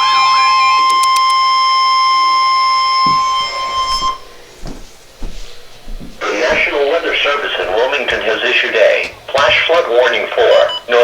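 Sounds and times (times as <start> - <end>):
emergency alert alarm tone: 0.0 - 11.0
soft low thumps: 3.0 - 8.4.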